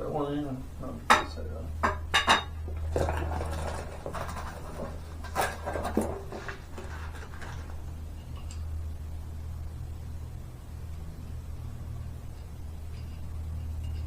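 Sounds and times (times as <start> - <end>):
steady low hum: 0.0 - 14.0
light metal scraping: 2.4 - 8.7.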